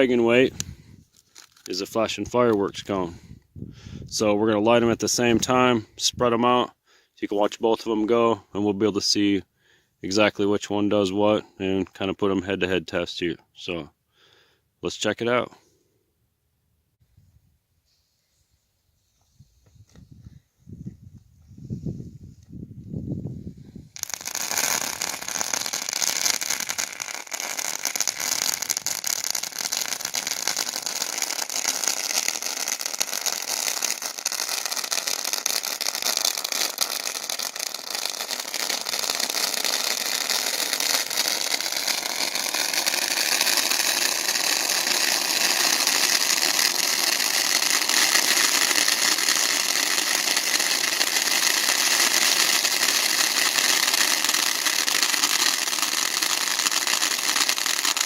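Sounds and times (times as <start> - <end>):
fountain firework hissing and crackling: 23.8 - 58.0.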